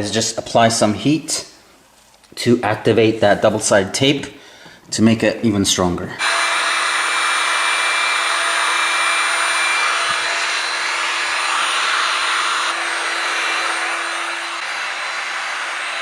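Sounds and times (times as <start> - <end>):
hot-air blower rushing: 6.2 - 16.0.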